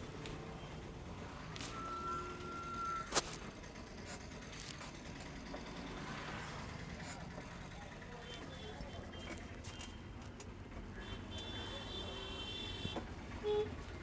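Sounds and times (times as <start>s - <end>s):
traffic hum: 0.0s - 13.9s.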